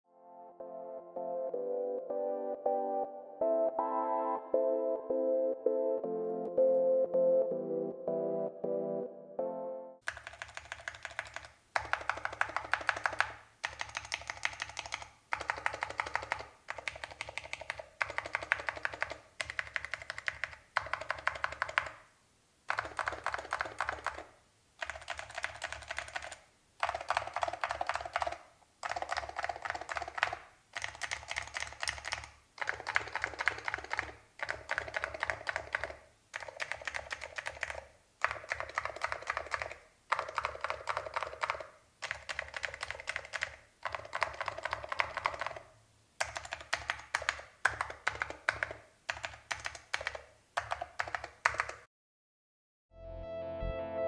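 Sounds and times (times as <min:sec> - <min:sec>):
fast mechanical keyboard typing: 0:10.0 - 0:22.0, 0:22.7 - 0:51.9.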